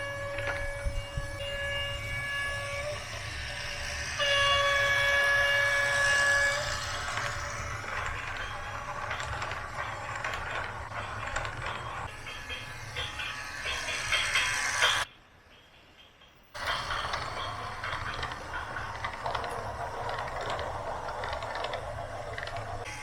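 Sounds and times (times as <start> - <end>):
rattling clattering noise: 4.9 - 15.0, 16.6 - 23.0.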